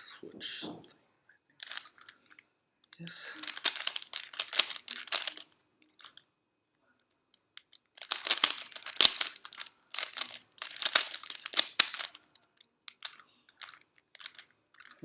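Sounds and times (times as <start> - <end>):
puzzle cube layers clicking: 3.4 - 5.4, 7.7 - 12.2.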